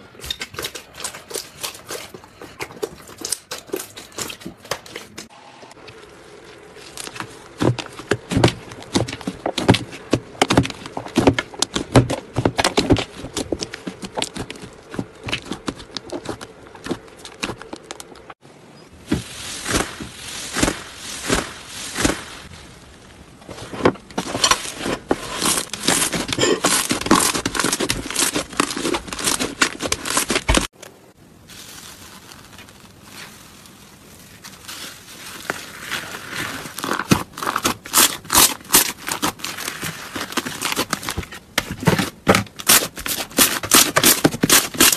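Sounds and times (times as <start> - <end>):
crunchy slime crackling and popping: 19.0 - 44.9.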